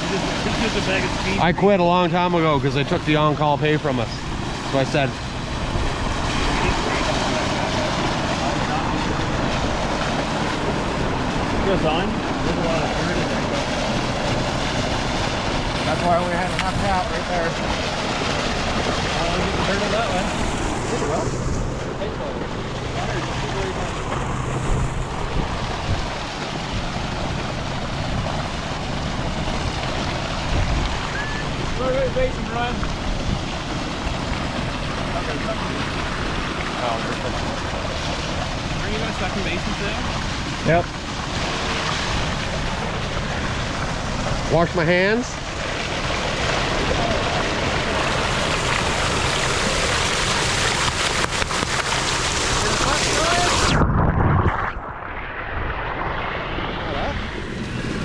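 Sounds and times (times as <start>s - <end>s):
low hum: 0.0s - 58.0s
water rushing from fire hydrant: 0.0s - 58.0s.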